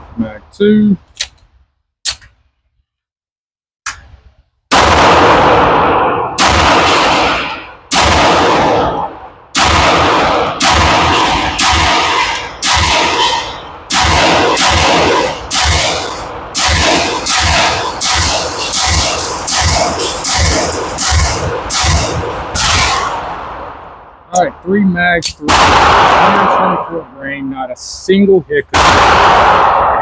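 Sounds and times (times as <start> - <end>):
pistol shots echoing: 4.7 - 24.0, 25.3 - 26.8, 28.7 - 30.0.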